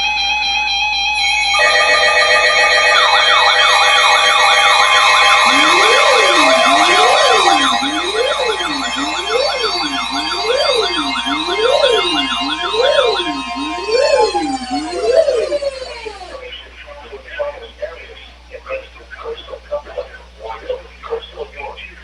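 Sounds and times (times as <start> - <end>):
sweeping alarm tones: 0.0 - 16.8
steady alert tones: 2.6 - 16.5
low up-and-down wail: 3.6 - 16.4.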